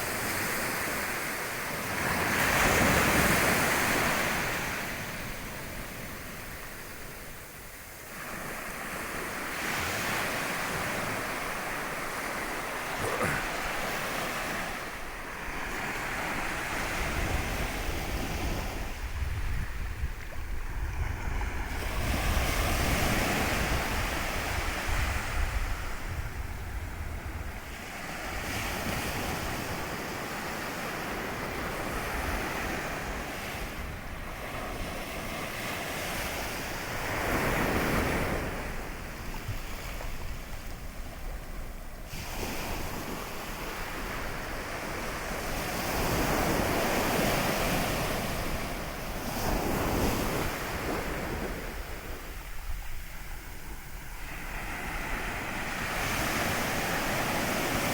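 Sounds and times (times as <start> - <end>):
small waves breaking on shore: 0.0 - 57.9
wind buffeting microphone: 14.5 - 57.9.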